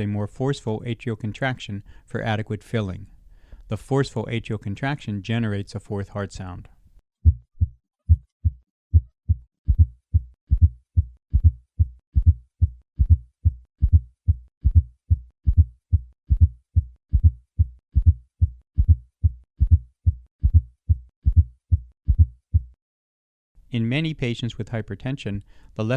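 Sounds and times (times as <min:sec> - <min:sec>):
heartbeat thumps through stethoscope: 0:07.2 - 0:22.8.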